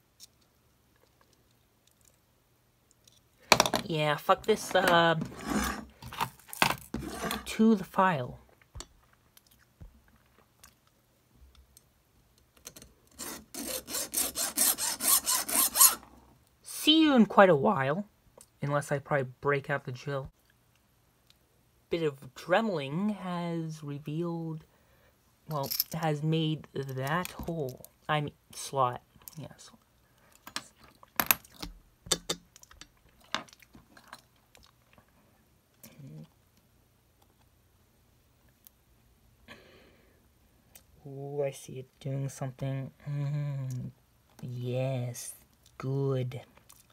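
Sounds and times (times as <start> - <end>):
hand file rasping: 13.1 - 16.0.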